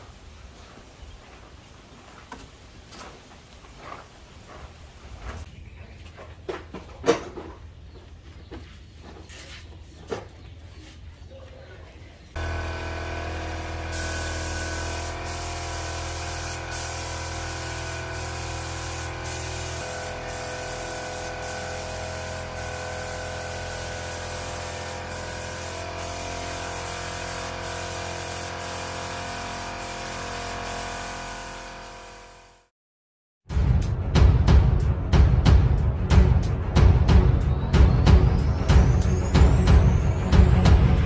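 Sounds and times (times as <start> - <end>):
multi-tone hum: 12.4 - 32.7
spraying hiss: 12.4 - 32.7.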